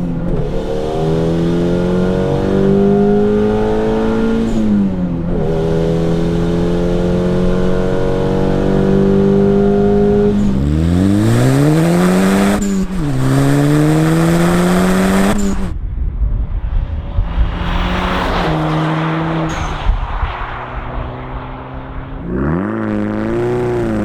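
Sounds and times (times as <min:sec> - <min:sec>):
car engine accelerating: 0:00.0 - 0:24.0
rough engine noise off throttle: 0:16.5 - 0:24.0.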